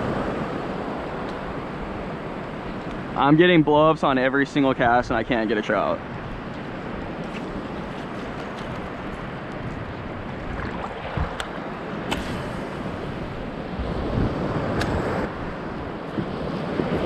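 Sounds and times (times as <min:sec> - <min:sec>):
surf washing: 0:00.0 - 0:17.0
wind buffeting microphone: 0:05.0 - 0:17.0.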